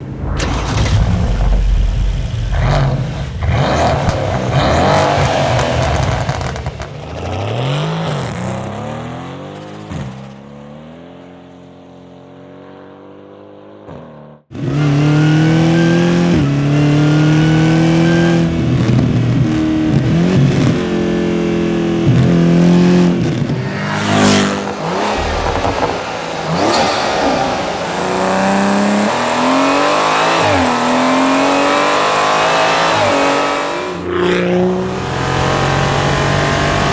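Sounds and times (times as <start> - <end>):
car pulling through gears: 0.0 - 10.4, 14.5 - 36.9
car engines revving and accelerating: 0.0 - 36.9.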